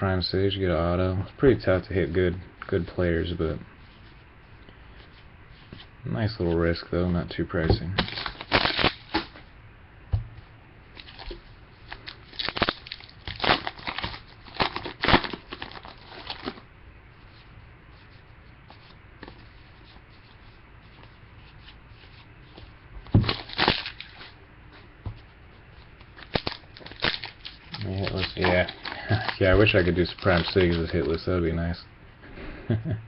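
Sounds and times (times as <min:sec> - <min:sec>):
wrappers crinkling and tearing: 0:08.0 - 0:09.3, 0:11.0 - 0:16.6, 0:23.2 - 0:24.4, 0:26.0 - 0:31.3.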